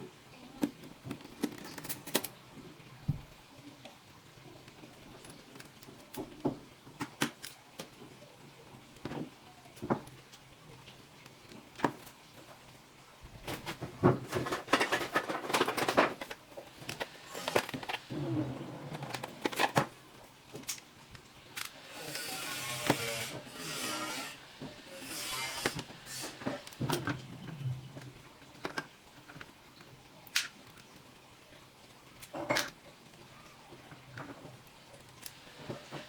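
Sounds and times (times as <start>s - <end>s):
steady hiss: 14.4s - 28.8s
rubbing: 21.9s - 26.6s.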